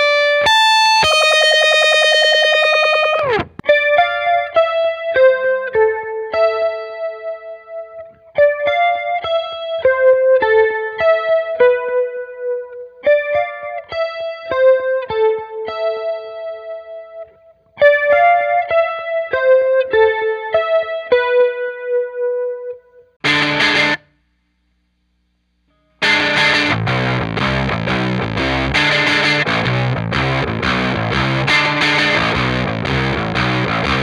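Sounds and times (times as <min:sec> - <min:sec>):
electric guitar riff: 0:00.0 - 0:07.5, 0:23.2 - 0:24.1, 0:26.0 - 0:34.0.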